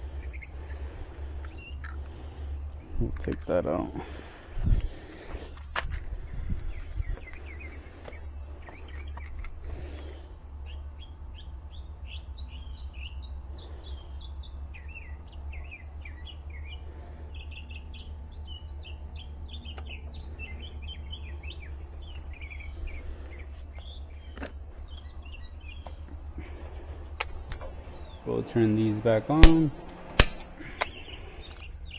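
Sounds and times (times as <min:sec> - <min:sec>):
small birds twittering: 0:00.0 - 0:31.9
steady low hum: 0:00.0 - 0:31.9
scattered clicks: 0:29.2 - 0:31.7.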